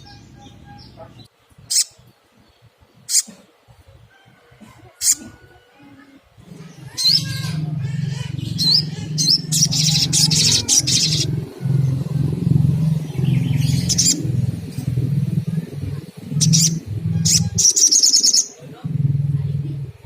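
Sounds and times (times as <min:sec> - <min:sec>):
sunbird chirps and trill: 0:00.0 - 0:03.3, 0:06.6 - 0:15.7, 0:16.3 - 0:18.6
low hum: 0:06.4 - 0:20.0.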